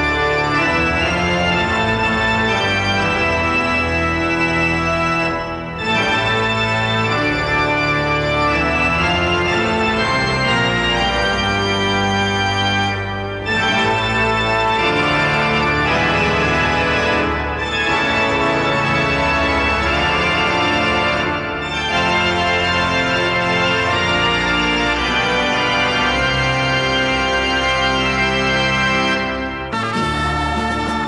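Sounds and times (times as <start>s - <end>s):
organ playing held chords: 0.0s - 31.0s.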